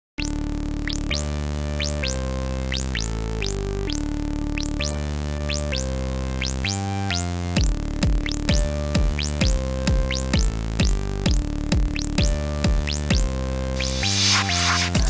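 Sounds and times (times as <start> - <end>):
synthesizer chords: 0.2 - 15.0.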